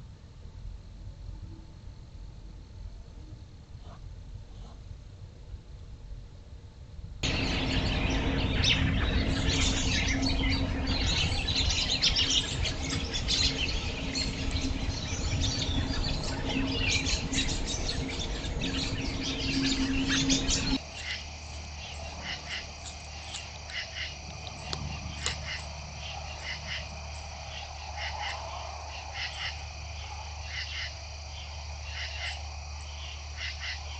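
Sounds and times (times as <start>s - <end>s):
low hum and rumble: 0.0s - 33.9s
high trilling chorus: 7.2s - 31.0s
many birds chirping: 7.2s - 33.9s.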